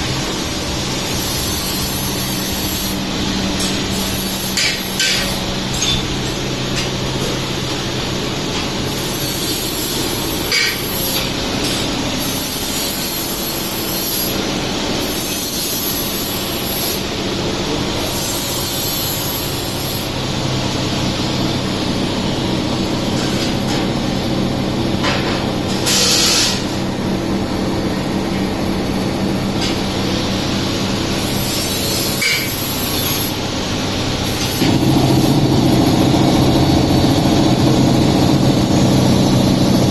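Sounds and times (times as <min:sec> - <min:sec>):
high hiss: 0:00.0 - 0:22.1
laser cutting machine humming: 0:00.0 - 0:39.9.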